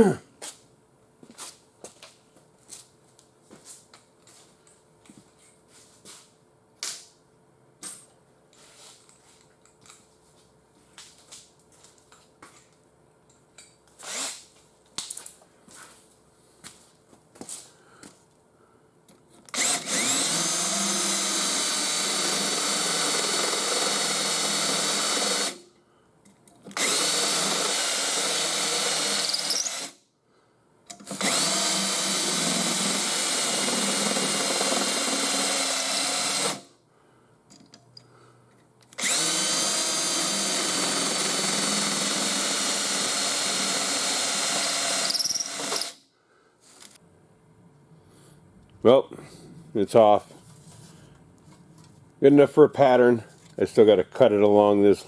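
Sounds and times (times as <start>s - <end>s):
power tool whining on metal: 19.5s - 25.6s, 26.7s - 30.0s, 31.0s - 36.7s, 39.0s - 46.0s.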